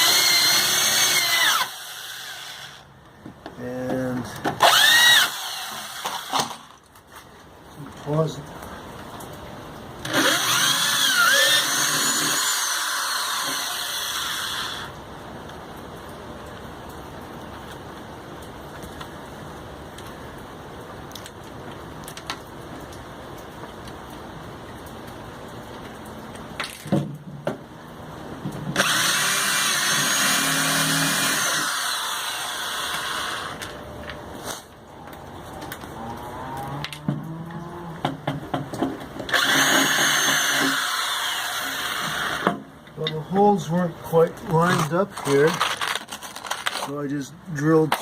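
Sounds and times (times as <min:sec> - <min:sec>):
electric drill whining: 0:00.0 - 0:02.8, 0:04.6 - 0:06.6, 0:10.1 - 0:14.9, 0:28.8 - 0:33.7, 0:39.3 - 0:42.5.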